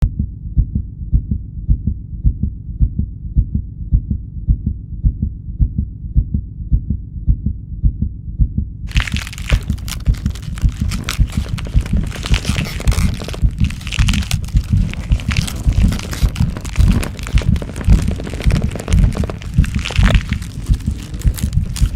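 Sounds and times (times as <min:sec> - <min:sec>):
thudding heartbeat: 0:00.0 - 0:12.1
dense crackling crunching noise: 0:08.9 - 0:21.9.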